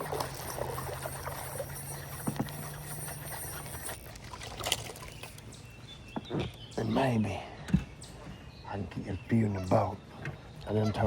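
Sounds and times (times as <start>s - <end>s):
electric trolling motor humming: 0.0s - 5.5s.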